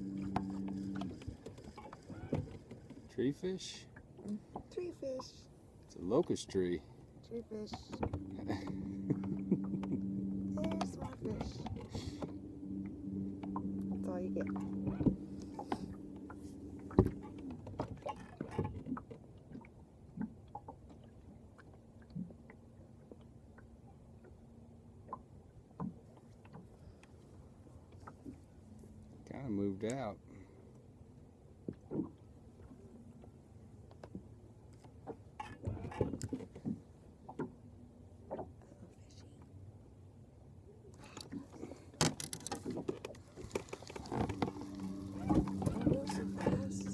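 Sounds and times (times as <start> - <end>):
boat motor humming: 0.0 - 5.0, 7.1 - 19.2, 41.2 - 46.9.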